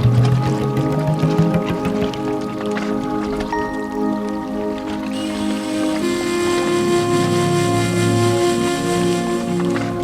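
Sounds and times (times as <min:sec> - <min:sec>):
sustained layered music notes: 0:00.0 - 0:10.0.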